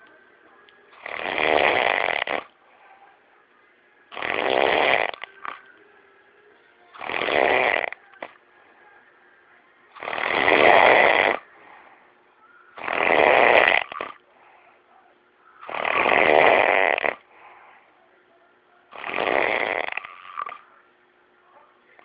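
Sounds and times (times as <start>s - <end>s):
man snoring: 1.0s - 2.5s, 4.1s - 5.6s, 6.9s - 8.3s, 9.9s - 11.5s, 12.8s - 14.2s, 15.6s - 17.3s, 18.9s - 20.6s
quiet breathing: 2.3s - 4.1s, 7.9s - 10.0s, 11.1s - 13.0s, 13.8s - 16.0s, 17.0s - 19.2s.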